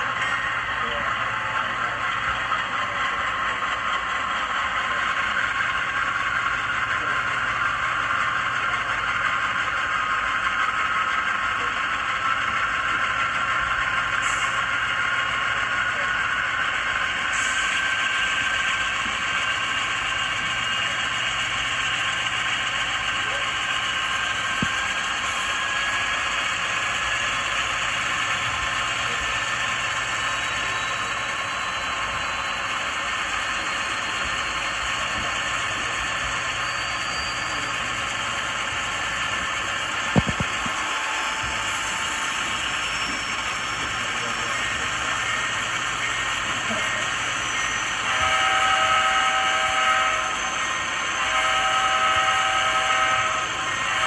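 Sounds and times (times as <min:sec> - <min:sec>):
diesel locomotive engine with turbo whine: 0:00.0 - 0:54.0
train air horn blasts: 0:48.1 - 0:50.4, 0:51.1 - 0:54.0.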